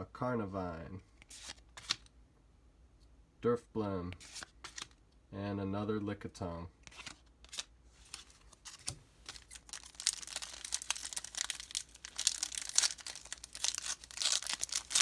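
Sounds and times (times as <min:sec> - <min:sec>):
foil wrapper crinkling and tearing: 0:09.2 - 0:15.0.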